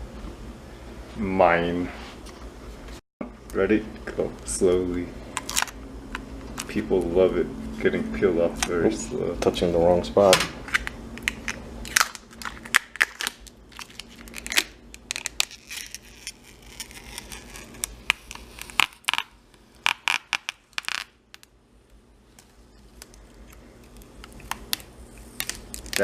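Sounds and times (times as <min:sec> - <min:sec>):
plastic film peeling crackles: 0:11.2 - 0:21.5, 0:22.4 - 0:26.0.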